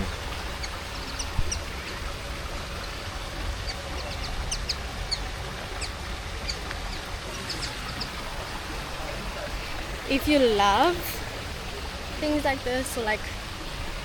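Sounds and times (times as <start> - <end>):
birds chirping: 0.0 - 10.9
steady low rumble: 0.0 - 14.0.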